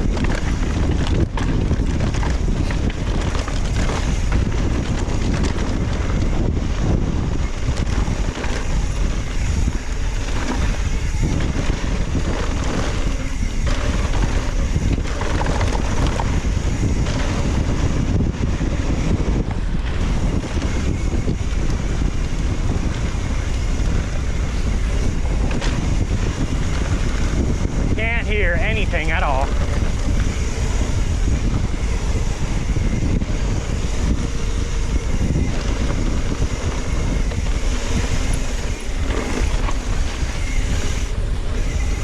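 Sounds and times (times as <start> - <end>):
bike rattling over trail: 0.0 - 42.0
wind buffeting microphone: 0.0 - 42.0.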